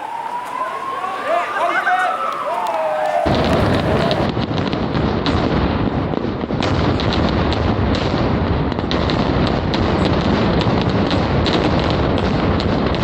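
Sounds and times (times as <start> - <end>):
fireworks and firecrackers banging: 0.0 - 13.0.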